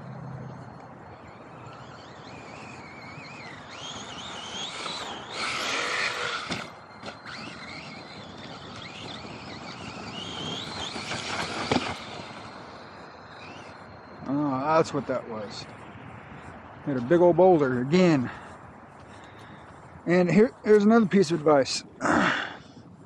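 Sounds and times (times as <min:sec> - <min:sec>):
rc truck motor whining: 0:00.0 - 0:15.8.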